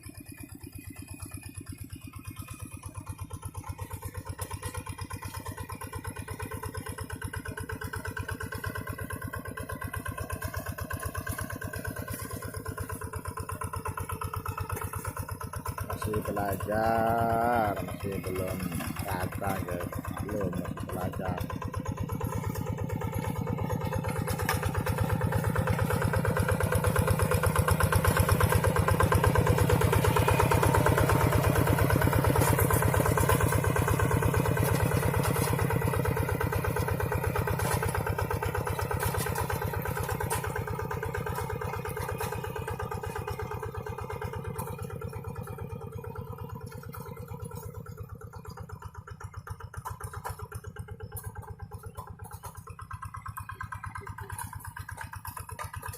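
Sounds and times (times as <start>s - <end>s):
diesel tractor engine running: 0.0s - 55.9s.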